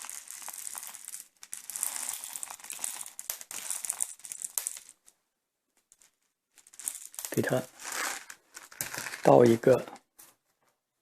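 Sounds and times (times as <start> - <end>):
plastic packaging crinkling: 6.8 - 9.9.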